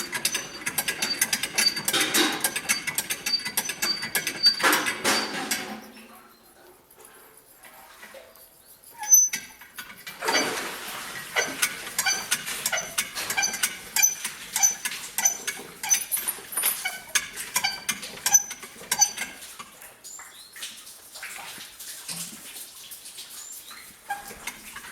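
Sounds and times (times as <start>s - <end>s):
well windlass squeaking: 0.0s - 6.6s, 8.6s - 10.6s, 11.2s - 19.3s.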